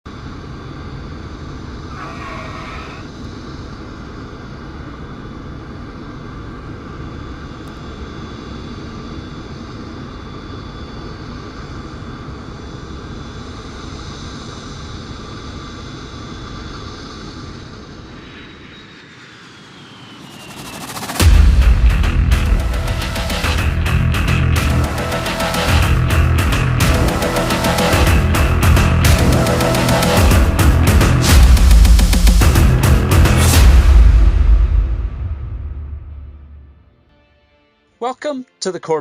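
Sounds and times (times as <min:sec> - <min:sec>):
aircraft engine rushing and whining: 0:00.1 - 0:37.1.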